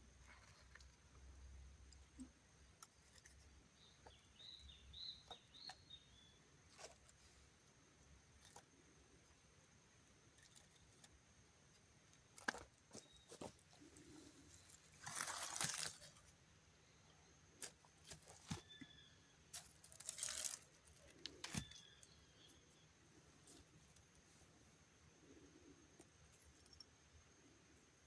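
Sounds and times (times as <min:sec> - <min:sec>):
faint bird chirps: 0:03.3 - 0:07.5, 0:18.2 - 0:23.6.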